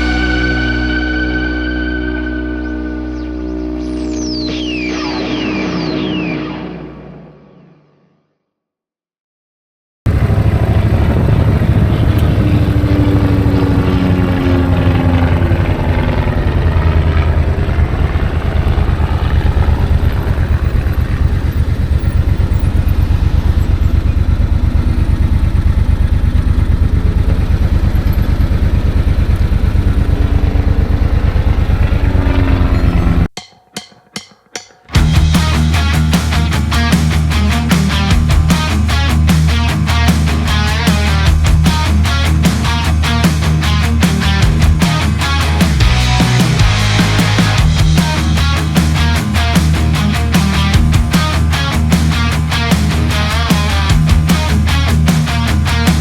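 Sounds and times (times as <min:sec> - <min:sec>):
motorcycle engine running: 0:10.1 - 0:33.3, 0:35.0 - 0:56.0.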